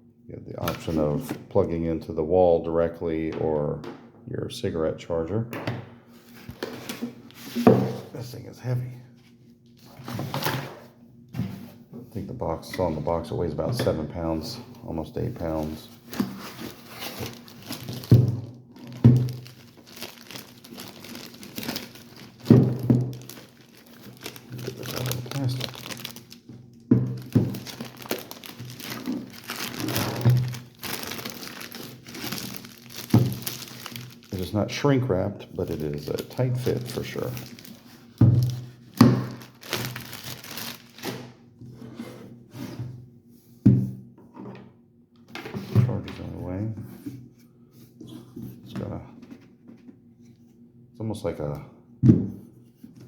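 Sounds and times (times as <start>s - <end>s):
plastic bag crinkling: 15.2s - 34.8s, 35.6s - 41.3s.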